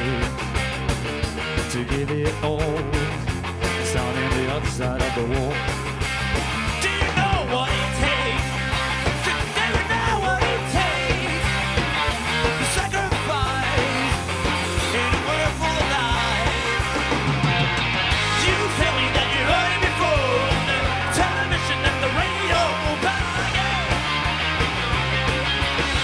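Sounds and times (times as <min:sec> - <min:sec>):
bass guitar notes: 0:00.0 - 0:26.0
drums: 0:00.0 - 0:26.0
electric guitar lead line: 0:00.0 - 0:26.0.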